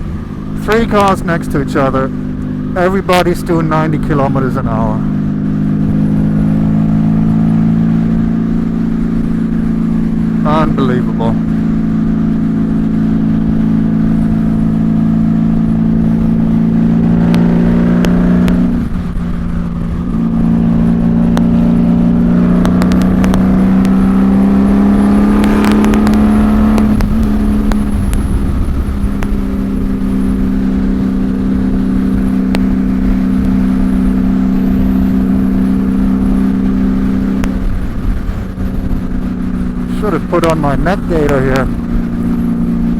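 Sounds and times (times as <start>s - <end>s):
motorcycle engine: 0.0s - 42.9s
wind rumble: 11.1s - 42.9s.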